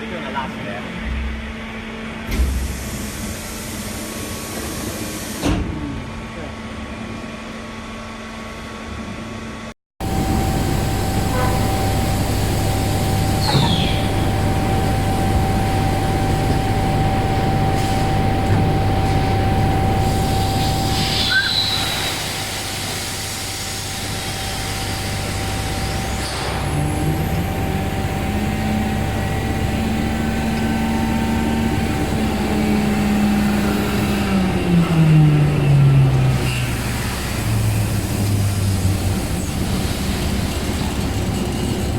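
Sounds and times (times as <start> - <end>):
machine mechanical hum: 0.0 - 41.9
machine drive tone: 10.0 - 23.2.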